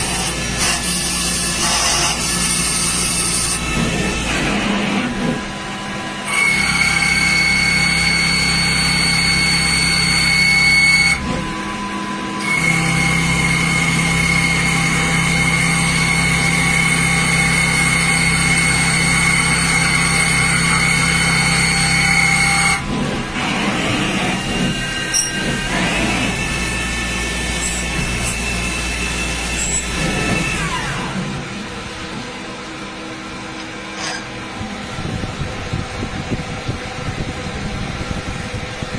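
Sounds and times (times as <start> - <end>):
machine high-pitched whine: 0.0 - 38.9
low machine hum: 20.0 - 38.9.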